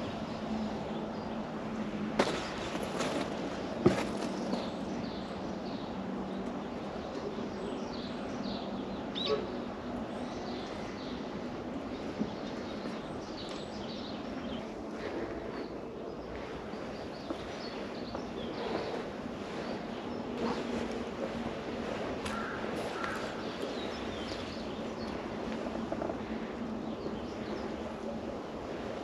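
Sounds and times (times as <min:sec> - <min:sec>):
small birds chirping: 0:04.2 - 0:20.9, 0:21.8 - 0:25.9.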